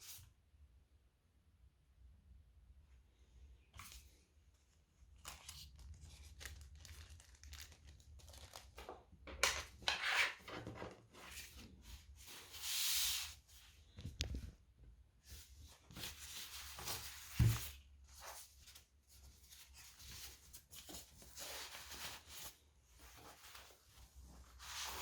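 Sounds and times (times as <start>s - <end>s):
packaging rubbing and tearing: 5.5s - 8.8s.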